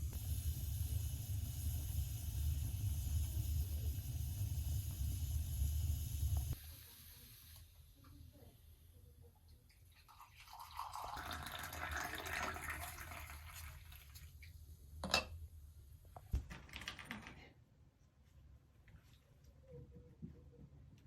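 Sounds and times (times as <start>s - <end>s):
liquid pouring into vessel: 9.9s - 14.4s.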